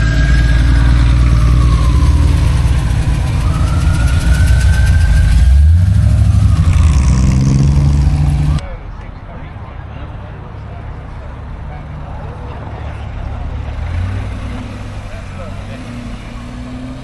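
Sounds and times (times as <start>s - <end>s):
car engine revving: 0.0s - 8.6s, 13.3s - 17.0s
high engine whine: 0.0s - 8.6s.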